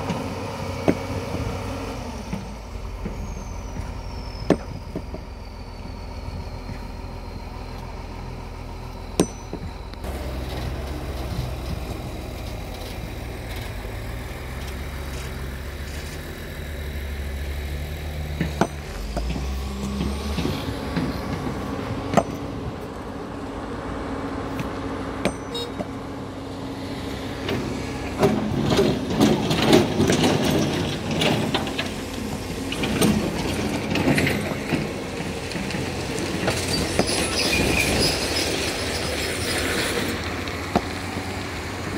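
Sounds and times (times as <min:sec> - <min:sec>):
excavator engine running: 0:00.0 - 0:41.9
metal clanks: 0:09.2 - 0:09.9, 0:18.4 - 0:22.6, 0:25.2 - 0:26.0
loud clattering and knocking: 0:27.5 - 0:37.4.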